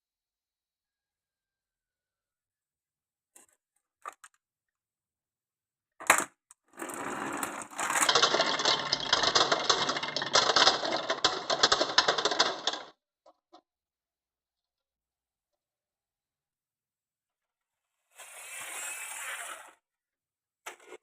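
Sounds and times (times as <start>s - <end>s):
marbles clattering on wooden run: 6.8s - 12.9s.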